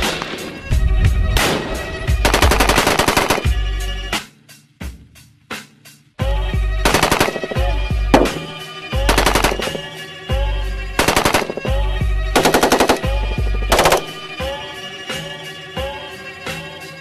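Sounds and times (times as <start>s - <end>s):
background music: 0.0s - 17.0s
automatic rifle fire: 1.4s - 3.6s, 6.9s - 9.9s, 11.0s - 11.8s, 12.4s - 14.4s.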